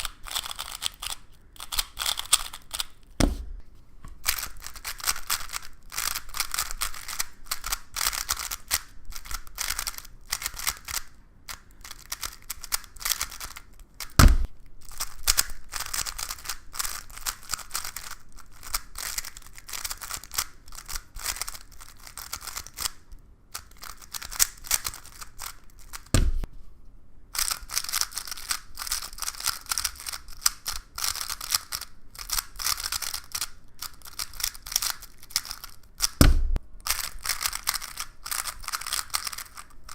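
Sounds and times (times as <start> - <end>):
plastic cube clicking: 0.0 - 3.0, 4.2 - 23.0, 23.6 - 26.2, 27.4 - 36.2, 36.9 - 39.9
low thump: 3.2 - 3.7, 14.2 - 14.5, 26.2 - 26.5, 36.2 - 36.6.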